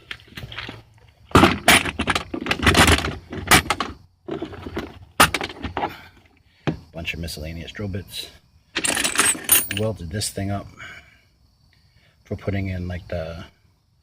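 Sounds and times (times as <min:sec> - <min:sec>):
metal tools rattling and clinking: 0:01.4 - 0:05.8, 0:08.8 - 0:10.0.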